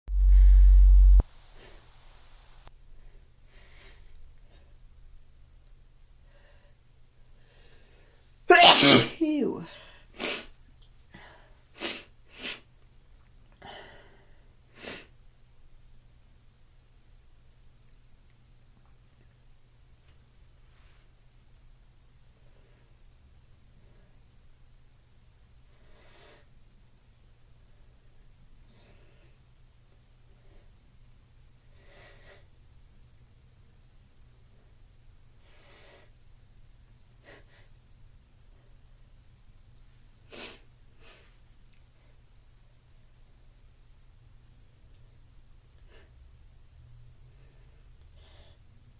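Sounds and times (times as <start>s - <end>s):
low steady hum: 0.1s - 1.7s
person sneezing: 8.5s - 10.4s.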